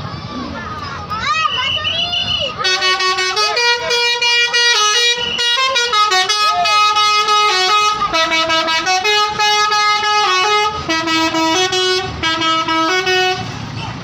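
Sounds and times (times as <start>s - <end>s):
multi-tone air horn playing tune: 2.6s - 13.5s.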